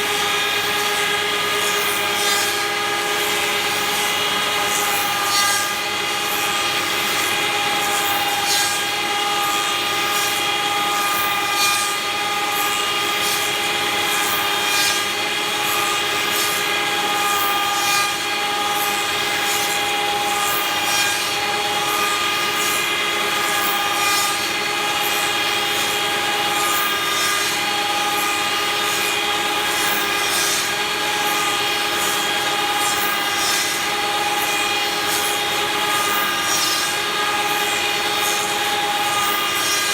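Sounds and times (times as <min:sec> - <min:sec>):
milling machine whine: 0:00.0 - 0:39.9.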